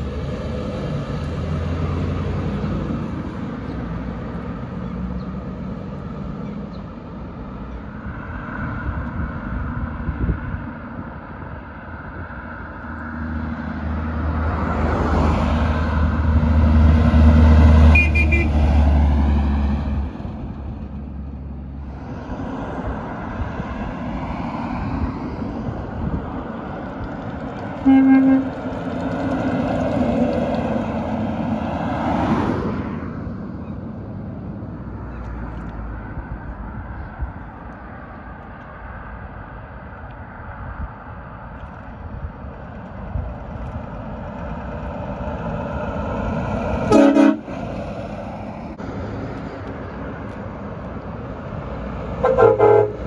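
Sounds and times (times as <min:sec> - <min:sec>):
heavy trucks passing: 0:00.0 - 0:53.0
short horn toot: 0:17.9 - 0:18.6, 0:27.8 - 0:28.6, 0:46.9 - 0:47.4, 0:52.2 - 0:53.0.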